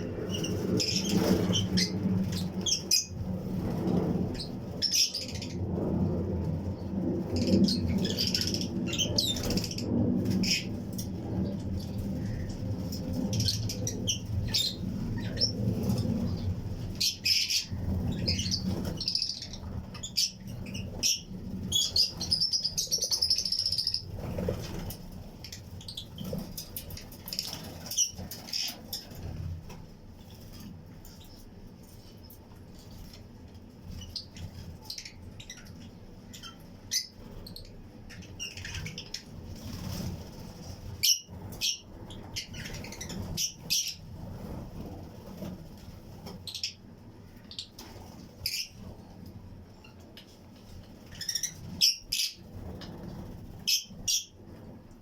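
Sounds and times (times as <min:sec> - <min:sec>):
lovebirds chirping: 0:11.9 - 0:29.2.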